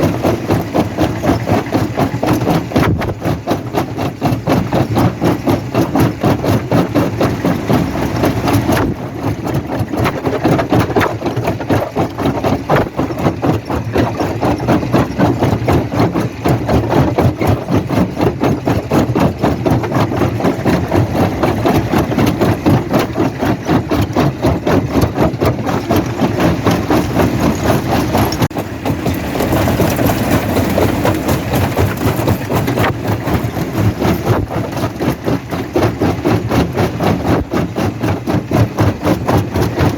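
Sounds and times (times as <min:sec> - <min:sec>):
stone crusher machinery pulsing: 0:00.0 - 0:39.9.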